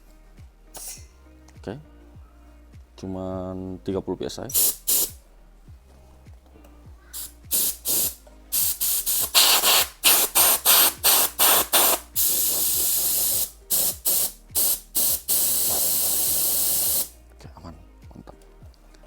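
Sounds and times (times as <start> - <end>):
air duster hissing blasts: 0.8 - 1.1, 4.5 - 5.2, 7.2 - 17.2.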